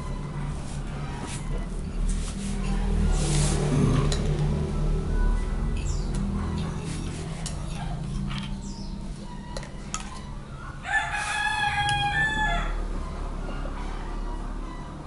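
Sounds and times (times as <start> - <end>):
rooster crowing: 10.6 - 13.2.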